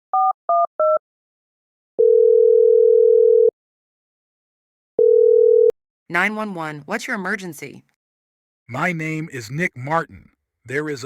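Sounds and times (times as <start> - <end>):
telephone ringback tone: 2.0 - 3.5, 5.0 - 5.7.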